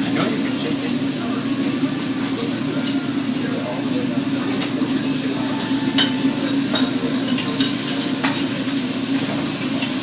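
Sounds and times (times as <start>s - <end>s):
food sizzling in a pan: 0.0s - 10.0s.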